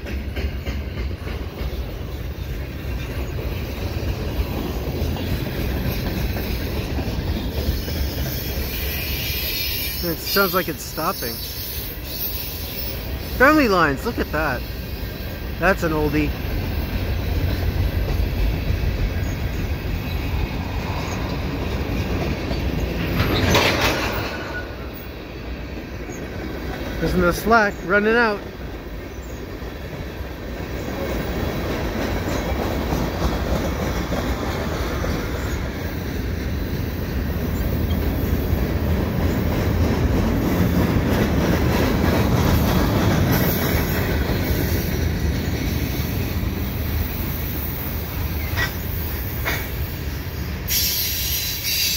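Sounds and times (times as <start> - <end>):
steel wheels rumbling on rails: 0.0 - 51.9.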